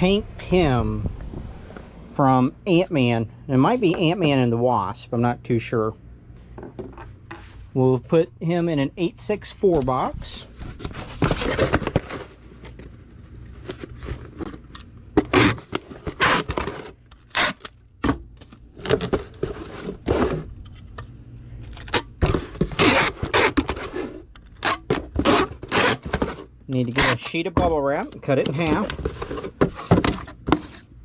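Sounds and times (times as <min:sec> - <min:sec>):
cardboard box being handled: 0:09.8 - 0:17.0.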